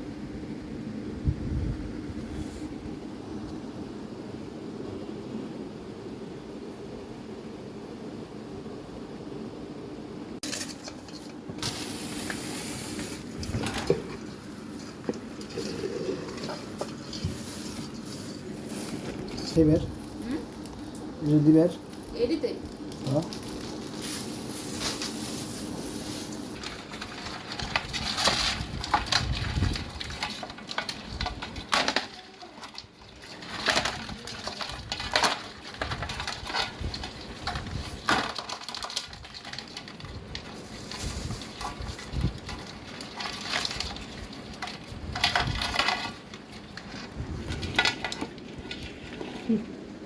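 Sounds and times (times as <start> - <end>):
crabs clicking and scraping: 10.4 - 50.0.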